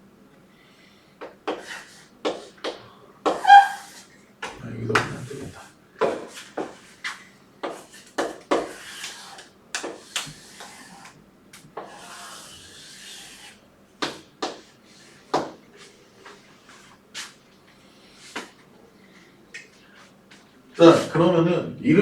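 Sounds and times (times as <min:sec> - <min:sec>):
scratchy rubbing strokes on board: 0:06.3 - 0:11.2, 0:11.8 - 0:17.4.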